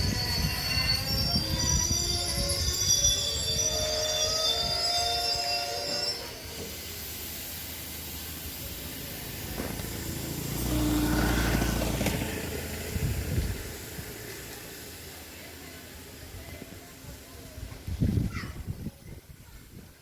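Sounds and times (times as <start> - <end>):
vehicle passing: 9.4 - 14.6.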